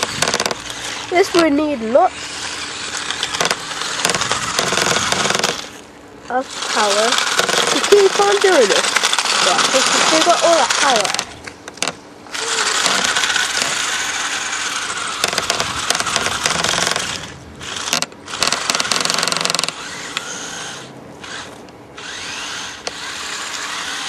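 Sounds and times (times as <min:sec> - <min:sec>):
electric motor whining: 0:00.0 - 0:24.0.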